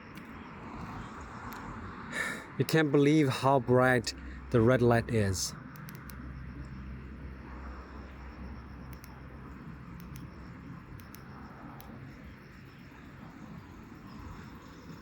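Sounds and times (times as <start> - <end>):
faint sharp ticks: 0.1 - 1.7, 5.6 - 6.8, 8.1 - 12.4
background rumble and hiss: 0.8 - 15.0.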